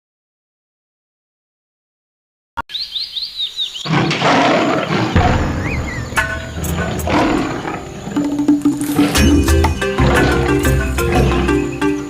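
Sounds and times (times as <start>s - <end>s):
high bird-like chirps: 2.7s - 12.0s
nature noise: 2.7s - 12.0s
rumbling animal roar: 3.9s - 11.9s.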